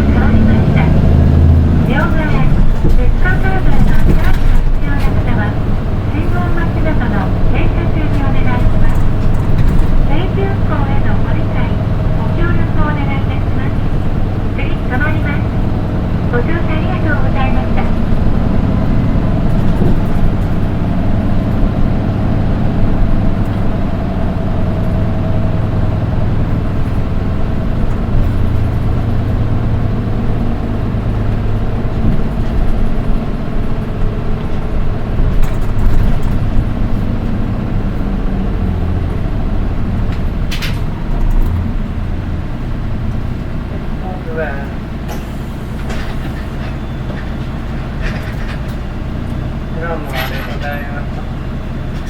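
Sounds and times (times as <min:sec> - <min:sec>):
high-pitched engine tone: 0:00.0 - 0:32.1
bus engine running: 0:00.0 - 0:52.0.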